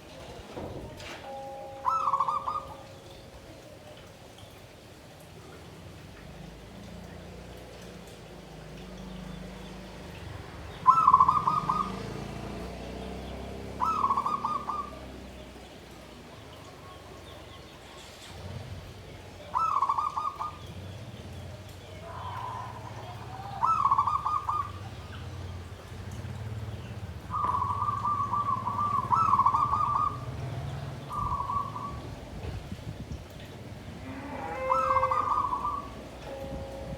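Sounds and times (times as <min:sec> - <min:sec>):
dove cooing song: 0:01.0 - 0:04.5, 0:10.6 - 0:15.6, 0:19.4 - 0:32.8, 0:34.3 - 0:36.9.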